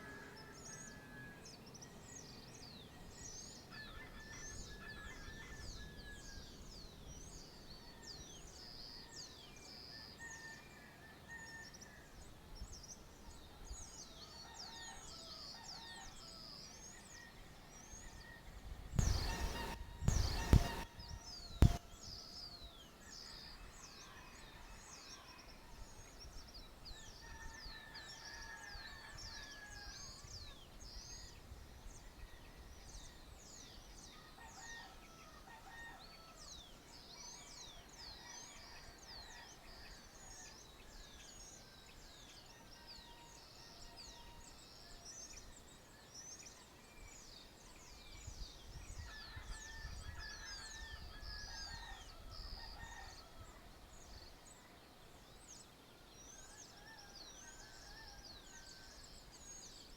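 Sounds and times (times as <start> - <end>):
small birds chirping: 19.0 - 21.8
lower longer bird calls: 19.0 - 22.8.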